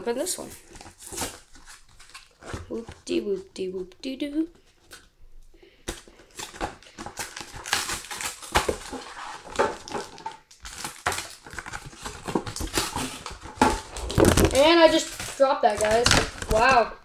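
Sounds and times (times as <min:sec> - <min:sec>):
plastic blister pack crackling: 0:05.9 - 0:17.0.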